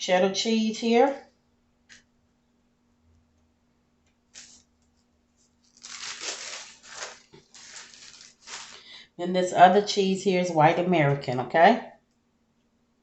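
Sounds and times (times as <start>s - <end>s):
plastic packaging crinkling: 4.3s - 4.7s, 5.5s - 9.0s.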